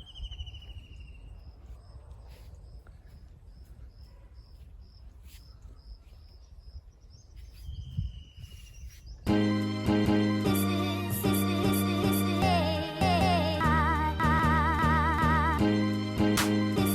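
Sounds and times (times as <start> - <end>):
crickets chirping: 0.0 - 8.8
loud music: 9.3 - 16.9.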